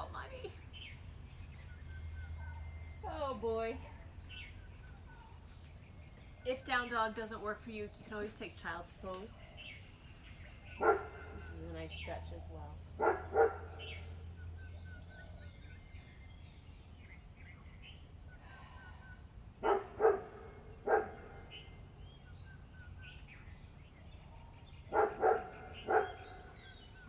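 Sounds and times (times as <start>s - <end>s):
small birds chirping faintly: 0.0s - 27.0s
dog barking: 10.8s - 11.6s, 13.0s - 14.2s, 19.6s - 21.8s, 24.9s - 26.7s.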